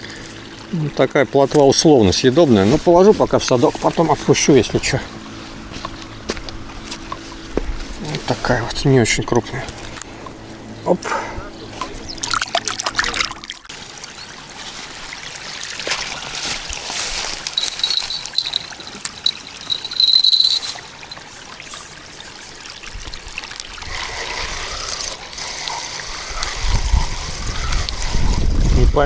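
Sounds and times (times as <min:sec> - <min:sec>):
water trickling and splashing: 0:00.0 - 0:10.1, 0:11.8 - 0:29.0
high-pitched chirps: 0:17.6 - 0:21.2.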